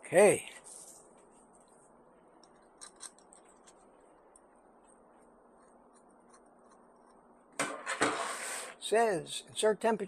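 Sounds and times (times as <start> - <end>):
small parts clicking: 2.4 - 3.8.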